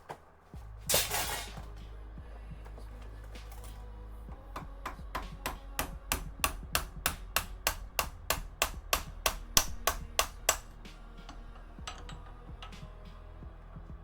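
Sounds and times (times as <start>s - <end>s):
hammer blows on metal: 4.3s - 13.3s.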